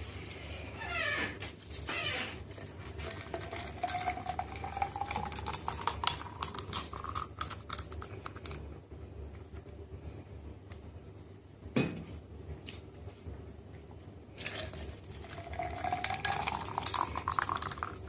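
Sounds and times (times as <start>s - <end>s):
smoothie pouring into a glass: 2.6s - 8.6s, 14.4s - 18.0s
glass clinking: 3.0s - 6.9s.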